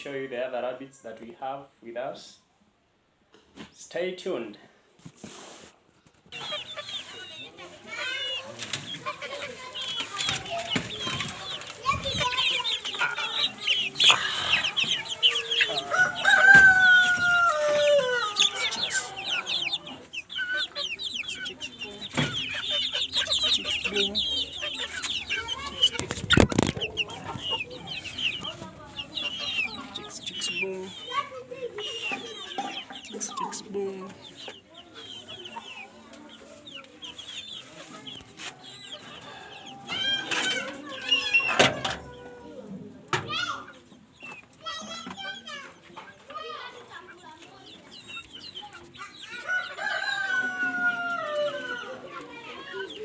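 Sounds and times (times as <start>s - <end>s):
chicks cheeping: 5.0s - 53.0s
rooster crowing: 15.4s - 19.6s, 49.4s - 52.1s.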